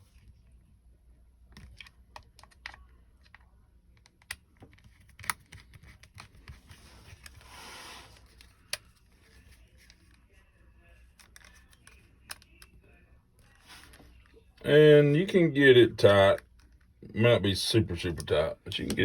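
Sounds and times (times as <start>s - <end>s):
screwdriver clicks and taps: 4.0s - 6.6s.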